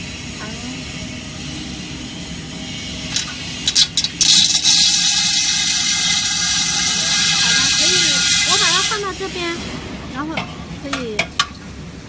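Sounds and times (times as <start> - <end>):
loud steady hiss: 0.0 - 12.0
machine humming: 0.0 - 12.0.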